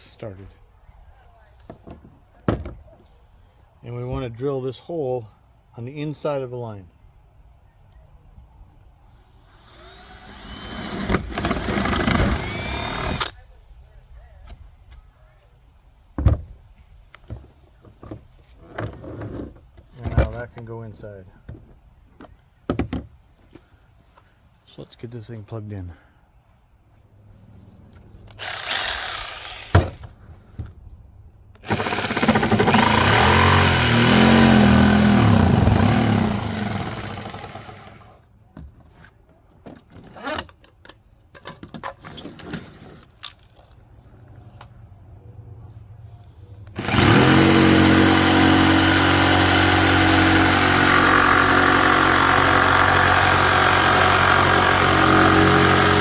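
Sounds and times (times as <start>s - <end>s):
knocks and handling: 1.5s - 3.2s, 16.1s - 20.7s, 21.4s - 24.3s
jigsaw cutting fibreglass: 9.1s - 13.4s, 28.3s - 29.8s, 31.6s - 38.1s, 46.8s - 56.0s.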